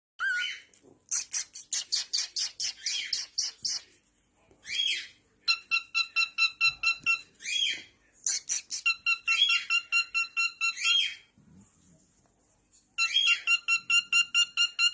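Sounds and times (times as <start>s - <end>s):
parrot squawks: 0.2s - 3.6s, 4.7s - 11.3s, 13.0s - 14.9s
parrot chirping: 0.2s - 3.9s, 4.7s - 11.3s, 13.0s - 14.9s.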